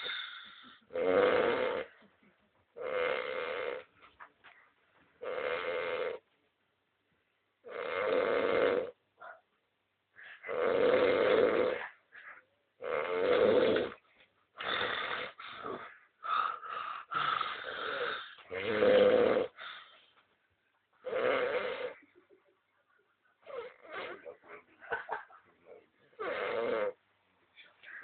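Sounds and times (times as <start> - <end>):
person snoring loudly: 0.0 - 1.9, 2.8 - 3.8, 5.2 - 6.2, 7.7 - 9.0, 10.5 - 11.8, 12.8 - 14.0, 14.6 - 15.8, 16.4 - 19.6, 21.0 - 22.0, 26.2 - 27.0.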